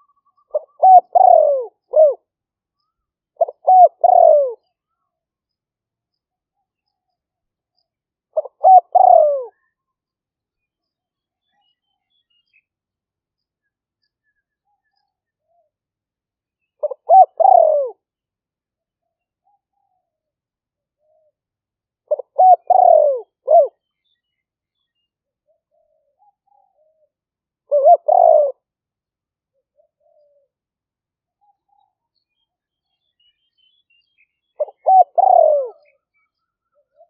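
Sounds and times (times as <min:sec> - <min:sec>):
dove cooing: 0:00.0 - 0:02.3, 0:03.4 - 0:04.7, 0:08.3 - 0:09.7, 0:16.8 - 0:18.0, 0:22.1 - 0:23.8, 0:25.5 - 0:27.1, 0:27.7 - 0:28.7, 0:29.6 - 0:30.6, 0:34.6 - 0:36.0, 0:36.7 - 0:37.0.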